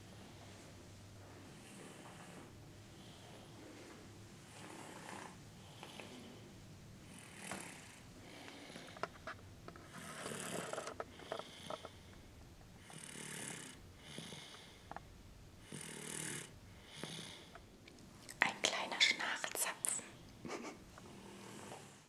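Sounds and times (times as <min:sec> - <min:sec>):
toddler snoring softly: 0:01.4 - 0:03.6, 0:04.4 - 0:06.4, 0:07.0 - 0:09.2, 0:09.9 - 0:12.0, 0:12.8 - 0:15.0, 0:15.6 - 0:17.6, 0:21.1 - 0:22.0.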